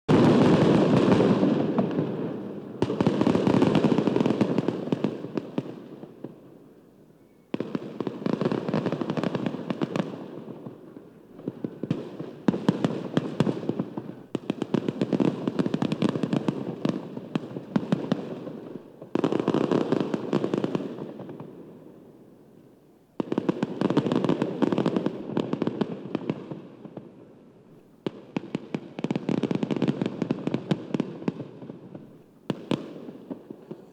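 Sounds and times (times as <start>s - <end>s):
fireworks crackling: 0.1s - 6.5s, 7.5s - 22.2s, 28.0s - 33.9s.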